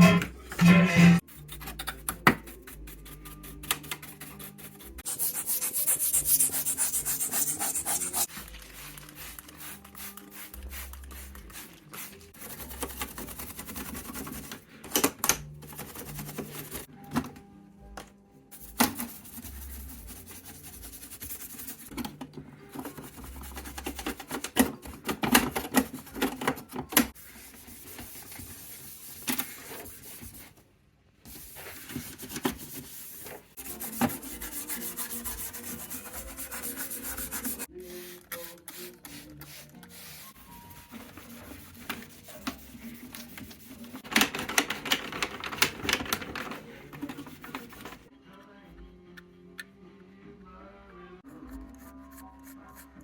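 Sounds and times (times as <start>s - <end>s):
rubbing and scraping: 0.0s - 1.2s, 5.0s - 9.1s.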